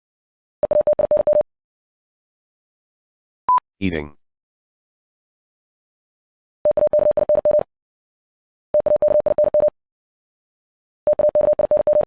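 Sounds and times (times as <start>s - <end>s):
morse code beeps: 0.6s - 1.4s, 6.7s - 7.7s, 8.8s - 9.7s, 11.1s - 12.0s.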